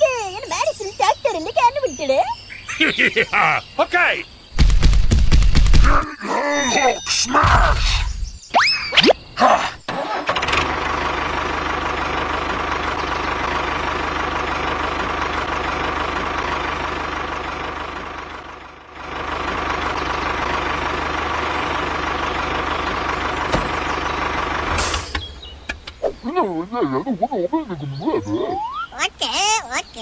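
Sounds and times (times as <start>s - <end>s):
tractor engine running: 0.0s - 6.1s, 9.9s - 26.4s.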